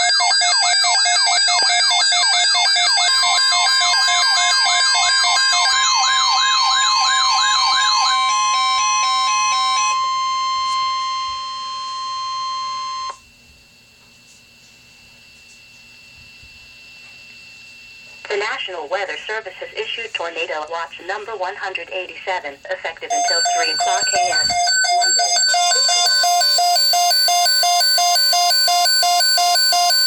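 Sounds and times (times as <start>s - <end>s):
siren alarm sweeping up and down: 0.0s - 13.2s, 23.1s - 30.0s
steady alarm tone: 0.0s - 18.6s, 23.1s - 30.0s.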